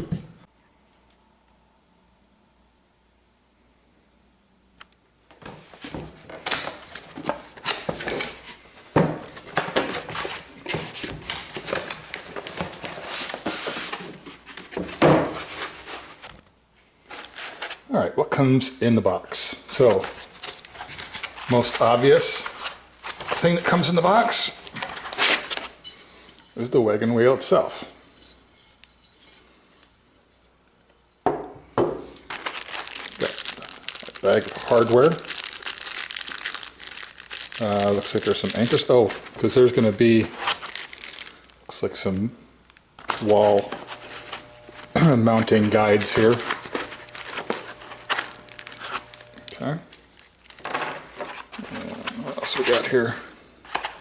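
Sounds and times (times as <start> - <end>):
cardboard and packaging rustling: 5.4 - 17.9, 19.6 - 25.8, 32.2 - 42.2, 43.0 - 54.0
plastic bag crinkling: 19.7 - 25.8, 32.2 - 42.2, 43.0 - 53.0.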